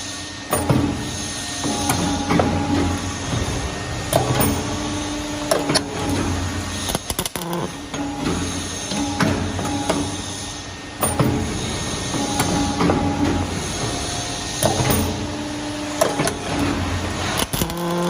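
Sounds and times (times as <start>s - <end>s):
machine motor hum: 0.0s - 18.0s
machine clicks and clanks: 0.5s - 18.0s.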